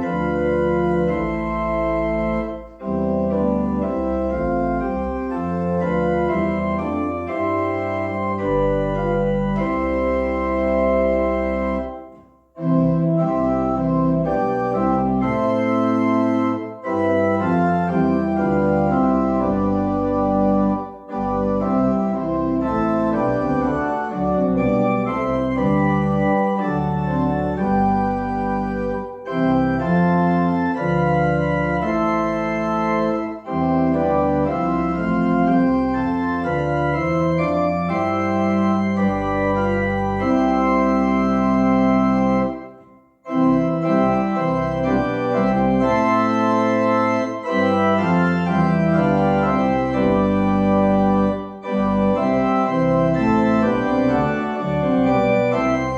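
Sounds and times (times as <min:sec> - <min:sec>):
organ playing held chords: 0:00.0 - 0:55.9.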